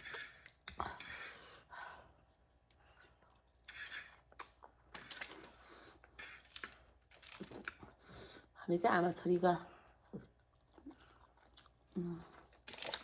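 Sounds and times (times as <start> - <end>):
chewing: 10.0 - 13.0.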